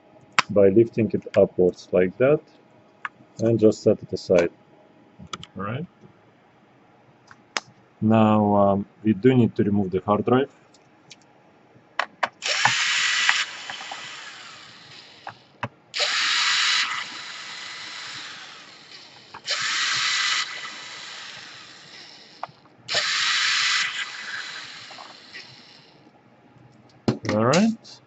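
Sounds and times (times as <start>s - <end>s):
sharp clicks: 5.3s - 5.6s
electric screwdriver whirring: 12.4s - 26.0s.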